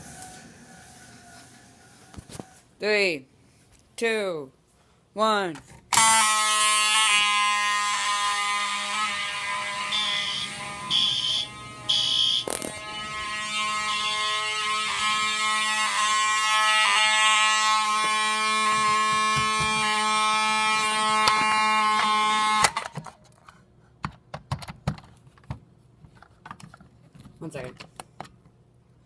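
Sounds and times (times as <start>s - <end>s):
fire alarm horn tone: 5.9s - 22.8s
pulsing high tone: 6.0s - 22.6s.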